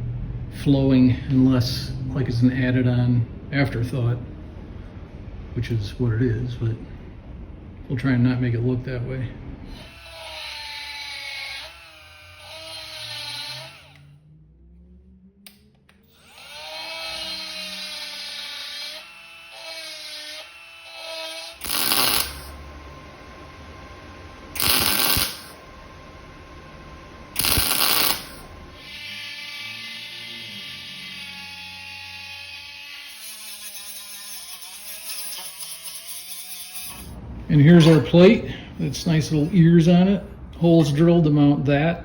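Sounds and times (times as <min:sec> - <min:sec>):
die grinder whining: 0:09.7 - 0:14.2, 0:15.4 - 0:39.6
loud short bursts of noise: 0:21.6 - 0:22.6, 0:24.5 - 0:25.7, 0:27.3 - 0:28.9.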